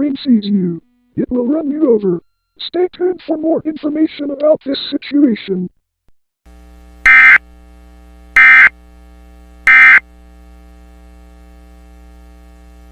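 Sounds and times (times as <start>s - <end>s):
steady electrical hum: 6.5s - 12.9s
digital data tone bursts: 7.1s - 7.4s, 8.4s - 8.7s, 9.7s - 10.0s.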